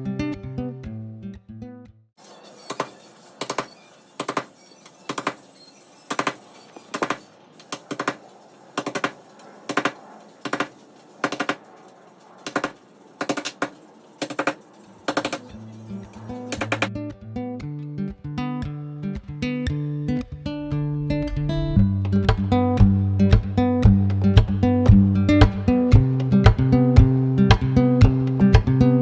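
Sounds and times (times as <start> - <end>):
sharp metallic knocks: 2.6 - 16.9.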